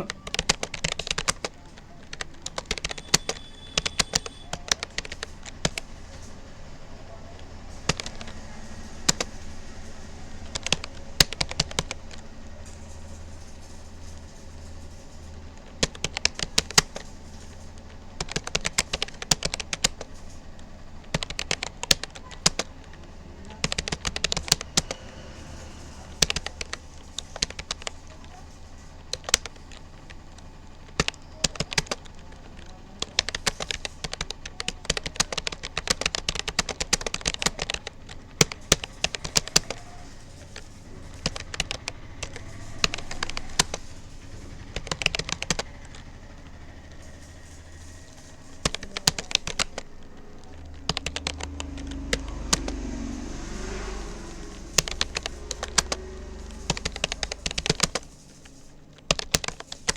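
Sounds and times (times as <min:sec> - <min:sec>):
keyboard key clicks: 0:00.0 - 0:05.9, 0:07.3 - 0:09.6, 0:17.8 - 0:20.1, 0:21.0 - 0:25.0, 0:29.1 - 0:52.9, 0:53.7 - 0:59.9
steady low hum: 0:00.0 - 0:59.9.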